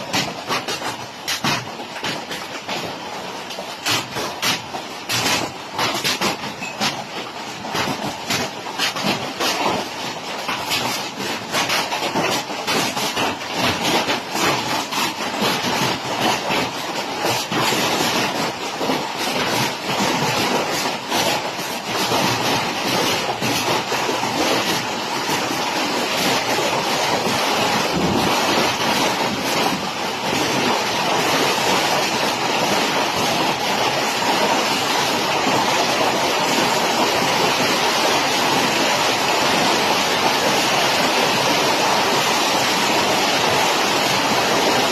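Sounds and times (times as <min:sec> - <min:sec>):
hailstones pelting down: 0:00.0 - 0:44.9
heavy rain rushing: 0:15.1 - 0:44.9.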